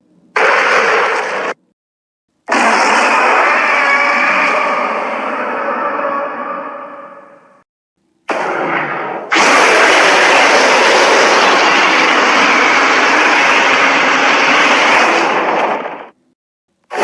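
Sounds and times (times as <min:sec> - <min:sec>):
person voicing monster roar: 0:02.5 - 0:06.9, 0:09.4 - 0:14.7.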